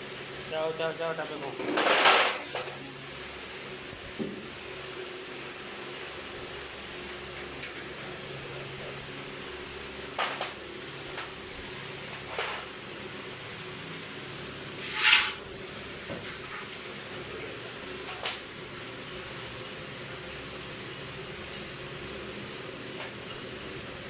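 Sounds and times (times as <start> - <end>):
metal tools clinking: 1.2 - 3.0.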